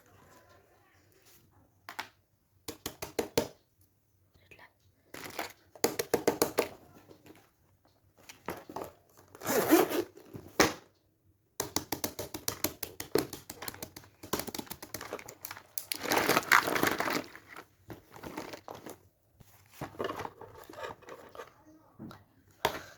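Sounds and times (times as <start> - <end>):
crinkling and rustling: 5.1 - 5.8, 6.6 - 10.6, 13.5 - 22.6.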